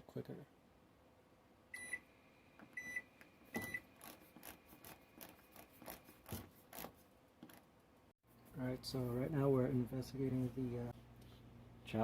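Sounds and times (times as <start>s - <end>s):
microwave oven beeping: 1.7s - 4.0s.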